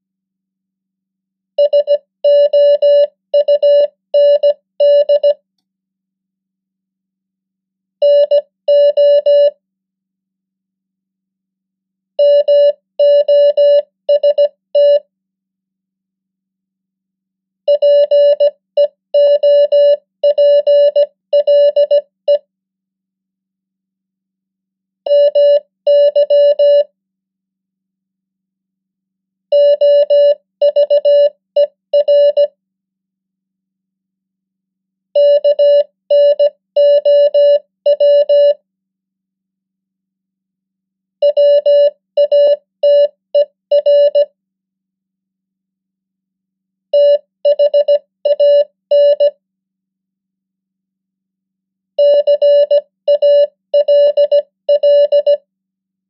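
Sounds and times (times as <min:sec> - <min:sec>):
morse code beeps: 0:01.6 - 0:05.4, 0:08.0 - 0:09.5, 0:12.2 - 0:15.0, 0:17.7 - 0:22.4, 0:25.1 - 0:26.9, 0:29.6 - 0:32.5, 0:35.2 - 0:38.6, 0:41.2 - 0:44.3, 0:47.0 - 0:49.4, 0:52.0 - 0:55.4.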